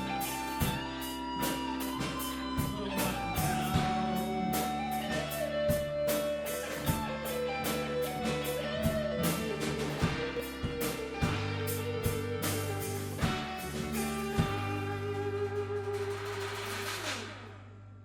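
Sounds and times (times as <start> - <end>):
rock band music: 0.0 - 17.9.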